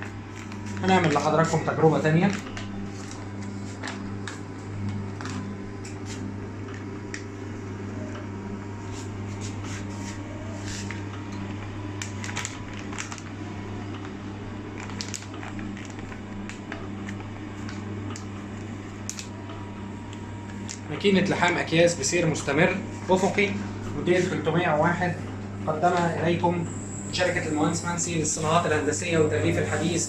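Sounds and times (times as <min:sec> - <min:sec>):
band sealer motor hum: 0:00.0 - 0:30.0
plastic crackling: 0:10.7 - 0:18.3.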